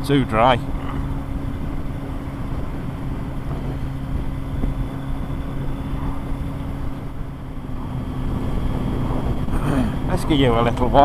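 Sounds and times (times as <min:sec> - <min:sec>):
motorcycle engine cruising: 0:00.0 - 0:11.0
road rumble: 0:00.0 - 0:11.0
wind noise on microphone: 0:00.6 - 0:11.0.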